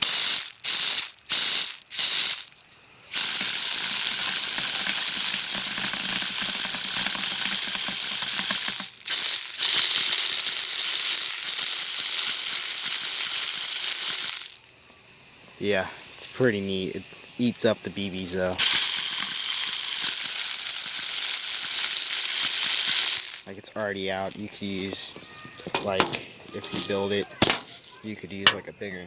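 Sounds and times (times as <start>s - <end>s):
compressed air gun firing: 3.1s - 14.5s, 18.6s - 23.5s
bbs rattling: 24.2s - 28.6s.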